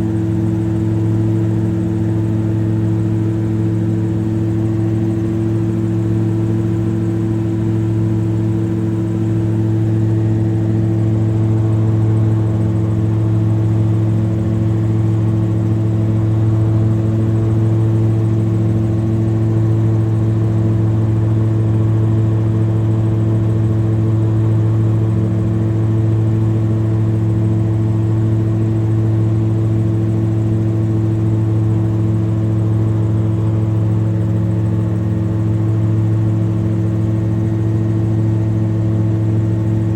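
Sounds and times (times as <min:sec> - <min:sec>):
drone propellers humming: 0:00.0 - 0:22.0, 0:31.1 - 0:39.9.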